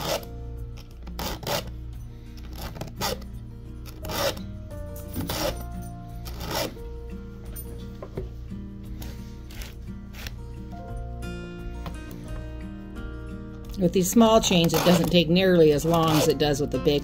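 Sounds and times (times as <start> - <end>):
file rasping on chainsaw chain: 0.0 - 0.3, 1.2 - 1.7, 3.9 - 4.4, 5.2 - 5.6, 6.2 - 6.8, 15.8 - 16.4
background music: 0.0 - 17.0.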